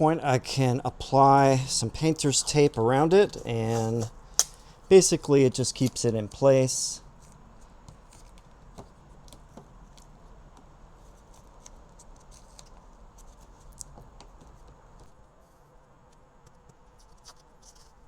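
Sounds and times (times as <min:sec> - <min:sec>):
painter's tape clicks and handling: 0:02.7 - 0:06.0, 0:11.2 - 0:14.0.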